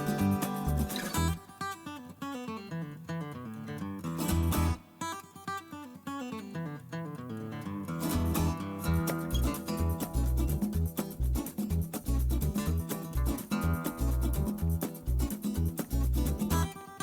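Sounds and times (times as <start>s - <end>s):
band with drums: 0.0s - 1.4s
acoustic guitar picking: 0.0s - 17.0s.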